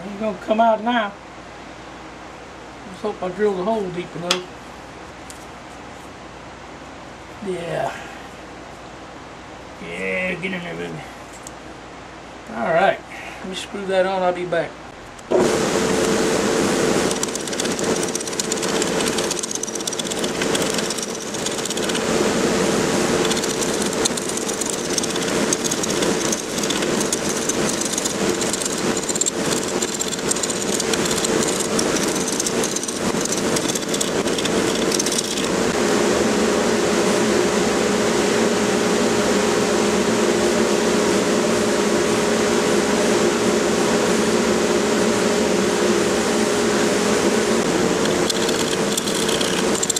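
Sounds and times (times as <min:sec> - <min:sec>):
wood lathe humming: 0:16.8 - 0:35.6, 0:48.0 - 0:49.9
turning tool cutting wood: 0:16.9 - 0:22.2, 0:23.0 - 0:35.6, 0:48.0 - 0:49.9.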